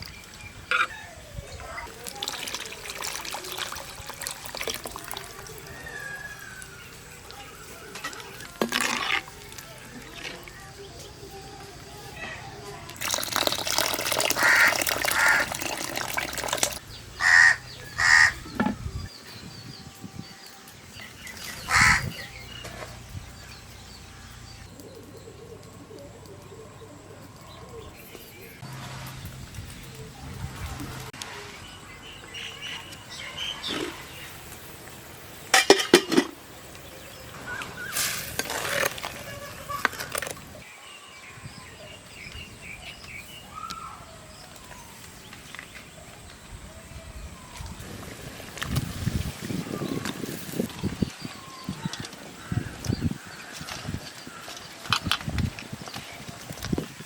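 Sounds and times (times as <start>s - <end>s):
crows cawing: 14.3s - 15.5s, 17.2s - 18.4s, 21.7s - 22.0s.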